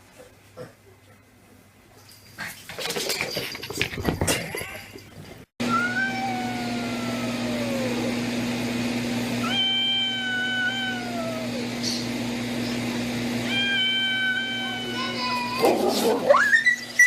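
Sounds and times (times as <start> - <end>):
cat meowing: 5.7 - 8.1, 9.4 - 11.6, 13.4 - 15.6.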